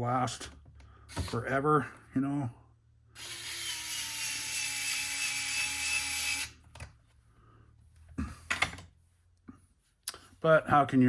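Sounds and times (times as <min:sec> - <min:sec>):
electric screwdriver whining: 0:03.2 - 0:06.5.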